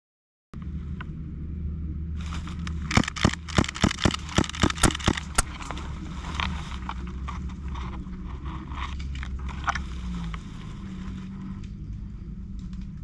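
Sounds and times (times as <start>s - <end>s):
low engine hum: 0.6s - 13.0s
airsoft gun shots: 2.7s - 5.9s.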